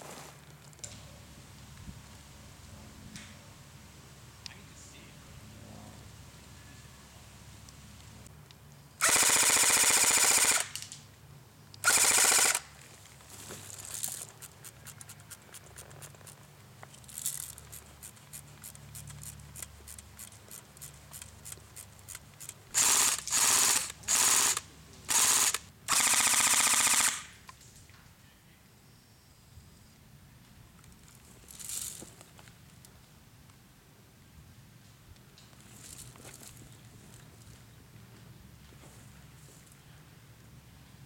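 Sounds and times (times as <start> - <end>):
airsoft gun firing bursts: 9.0 - 10.8, 11.8 - 12.7, 22.7 - 27.4.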